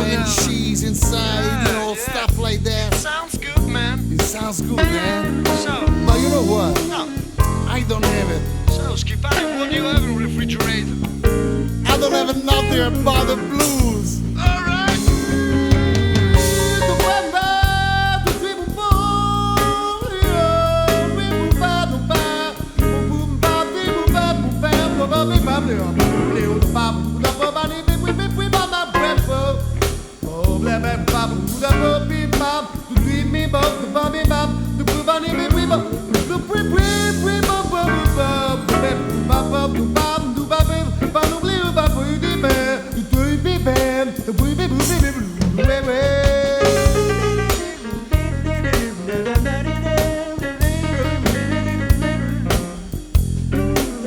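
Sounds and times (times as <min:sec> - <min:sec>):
person singing: 0:00.0 - 0:53.0
blues song with drums and guitar: 0:00.0 - 0:54.0.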